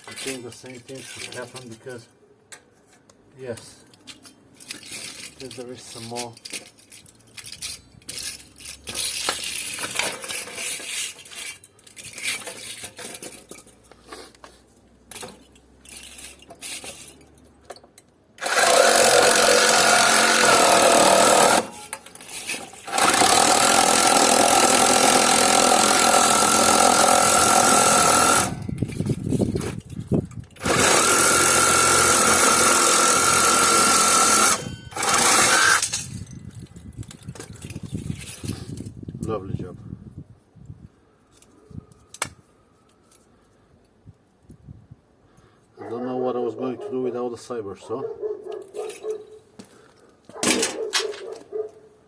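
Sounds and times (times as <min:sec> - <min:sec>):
metal parts clattering: 0:00.0 - 0:02.0, 0:03.6 - 0:14.1, 0:15.0 - 0:19.0, 0:20.0 - 0:23.7, 0:26.1 - 0:32.0, 0:34.4 - 0:39.1
sabre saw cutting metal: 0:18.4 - 0:21.8, 0:22.8 - 0:28.6, 0:30.6 - 0:35.9.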